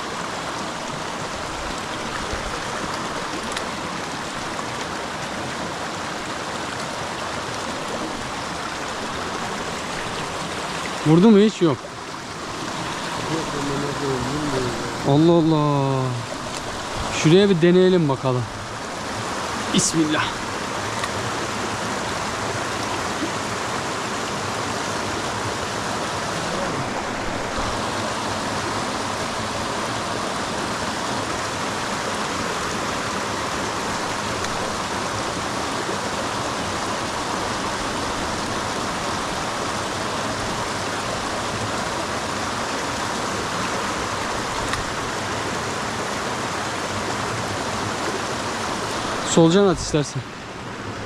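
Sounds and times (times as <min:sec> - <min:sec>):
creek water rushing: 0:00.0 - 0:51.0.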